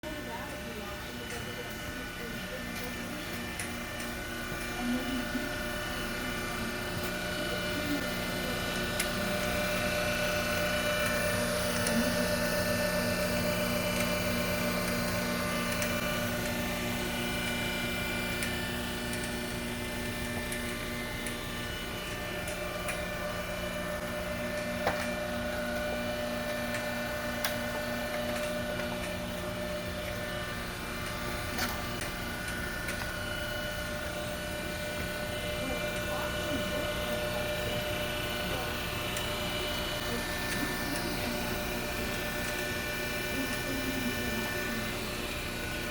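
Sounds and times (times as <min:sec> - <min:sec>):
lathe humming and whining: 0:00.0 - 0:45.9.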